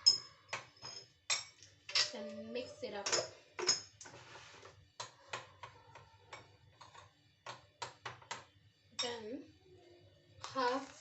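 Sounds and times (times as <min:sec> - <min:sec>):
spoon clinking against mug: 0:00.0 - 0:02.2, 0:03.0 - 0:04.0
spoon scraping mug: 0:03.6 - 0:07.1.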